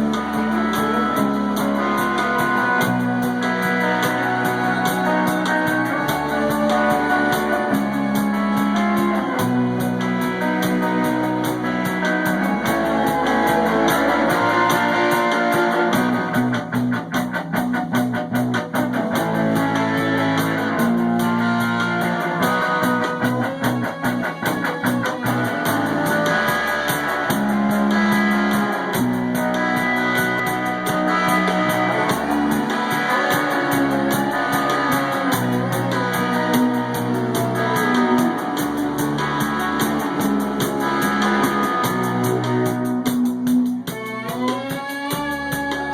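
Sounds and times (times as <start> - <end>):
amplified guitar and bass chords: 0.0 - 45.9.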